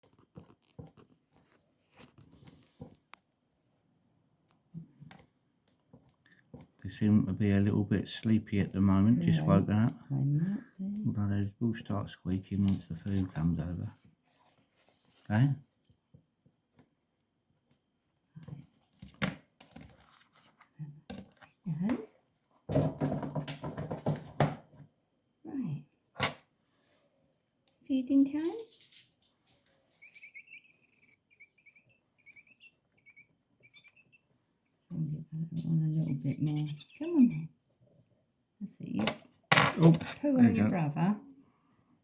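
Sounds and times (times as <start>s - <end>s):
rustling and crinkling: 0.0s - 6.8s, 12.4s - 16.8s, 18.5s - 25.0s, 26.6s - 30.2s.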